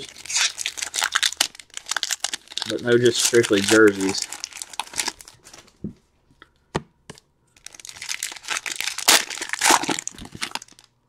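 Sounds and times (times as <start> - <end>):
card wrappers crinkling and tearing: 0.0 - 5.7, 7.6 - 10.9.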